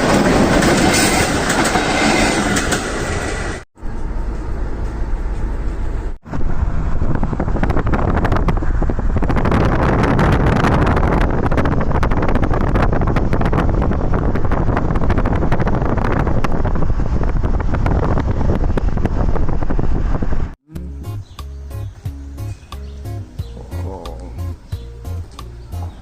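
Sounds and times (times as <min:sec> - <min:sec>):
music: 0:20.7 - 0:26.0.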